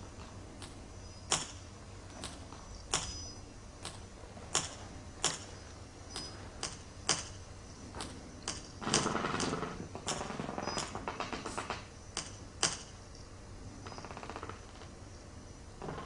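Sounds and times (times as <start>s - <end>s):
buzzing rattle: 0.0s - 16.0s
sharp clicks: 0.6s - 5.5s, 6.1s - 13.3s.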